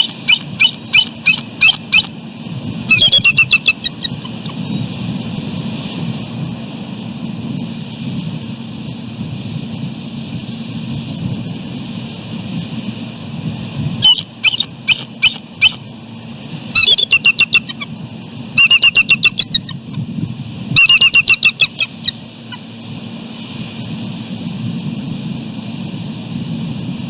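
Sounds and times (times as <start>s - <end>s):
eagle calling: 0.0s - 4.9s, 14.0s - 15.9s, 16.7s - 20.0s, 20.7s - 22.7s
wind noise on microphone: 0.0s - 27.0s.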